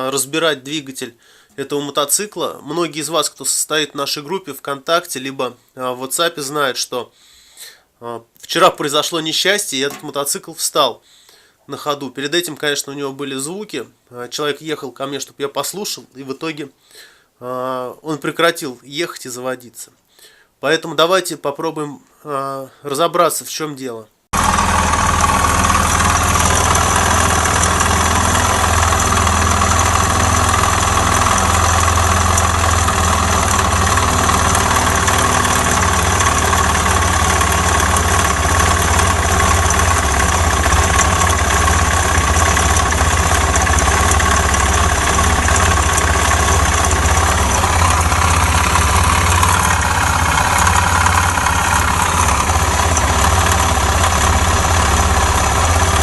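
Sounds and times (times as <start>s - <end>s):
motorcycle engine idling: 24.4s - 56.0s.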